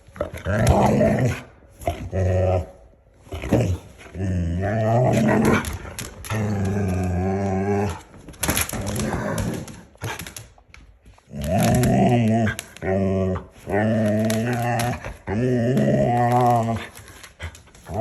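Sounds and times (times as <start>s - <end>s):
dog growling and moaning: 0.0s - 10.3s, 11.2s - 18.0s.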